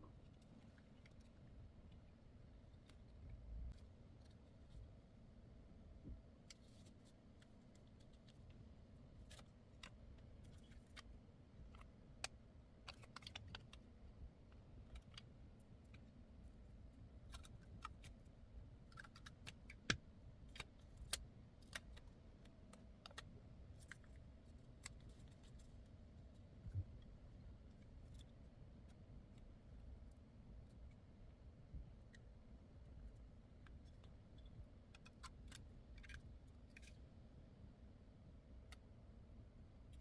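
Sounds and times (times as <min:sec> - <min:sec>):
low room background: 0:00.0 - 0:40.0
small clicks and taps: 0:09.2 - 0:16.1.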